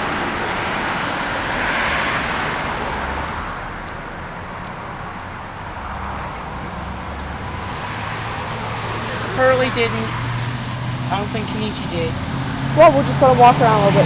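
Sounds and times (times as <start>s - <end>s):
rushing outdoor background noise: 0.0s - 14.0s.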